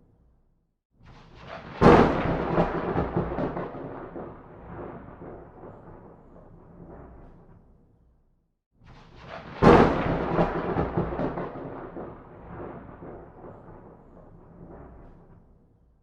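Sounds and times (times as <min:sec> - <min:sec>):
thunder crack and rumble: 0:01.1 - 0:07.8, 0:08.8 - 0:15.9.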